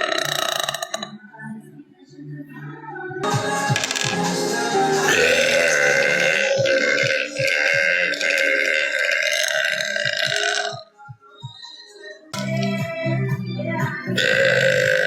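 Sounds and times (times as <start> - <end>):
long drawn-out belch: 0.0 - 1.1, 5.0 - 10.8, 14.2 - 15.0
background music with steady beat: 0.0 - 15.0.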